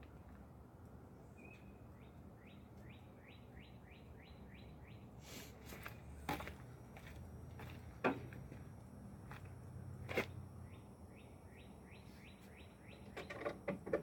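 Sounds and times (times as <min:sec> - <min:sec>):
sharp clicks and knocks: 0:13.1 - 0:14.0.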